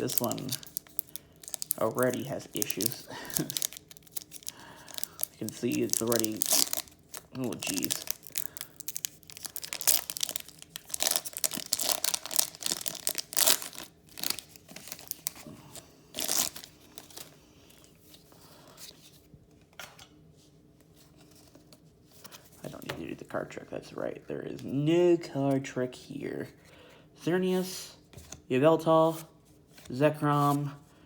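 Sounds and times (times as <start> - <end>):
foil wrapper tearing and crinkling: 0.0 - 15.5, 16.2 - 17.2.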